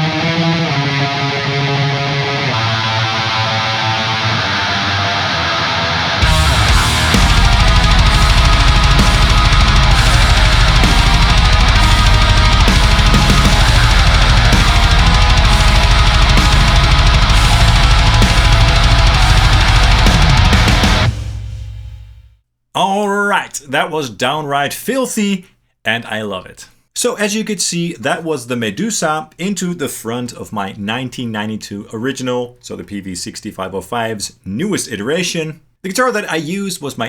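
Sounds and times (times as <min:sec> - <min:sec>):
distorted electric guitar riff: 0:00.0 - 0:22.3
programmed drums: 0:06.2 - 0:22.4.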